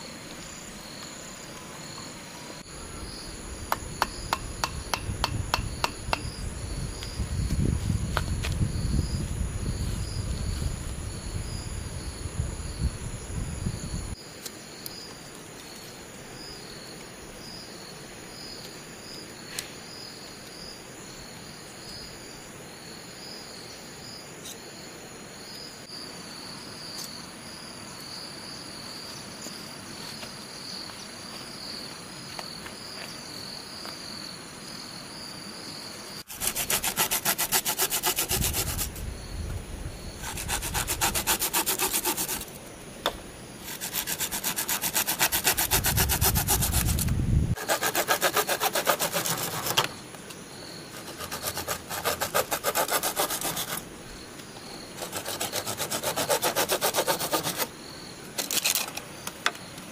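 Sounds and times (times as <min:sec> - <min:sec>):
insects chirping: 0:00.0 - 0:59.9
rhythmic rubbing on wood: 0:36.3 - 0:38.9, 0:40.2 - 0:42.5, 0:43.7 - 0:47.0, 0:47.6 - 0:49.8, 0:51.0 - 0:53.8, 0:55.0 - 0:57.7.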